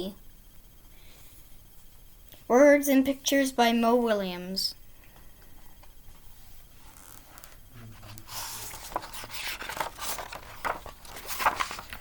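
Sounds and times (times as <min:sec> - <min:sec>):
book pages rustling: 0:06.8 - 0:12.0.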